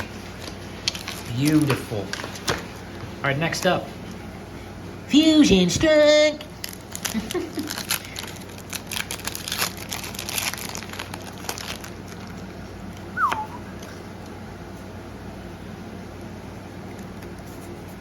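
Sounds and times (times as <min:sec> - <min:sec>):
foil wrapper crinkling and tearing: 0:00.3 - 0:02.7, 0:06.6 - 0:13.1
short falling squeak: 0:13.2 - 0:13.7.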